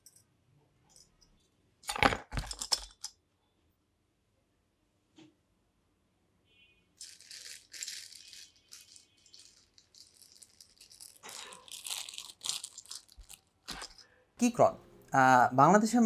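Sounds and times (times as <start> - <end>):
shaker-like rattling: 7.0 - 14.0.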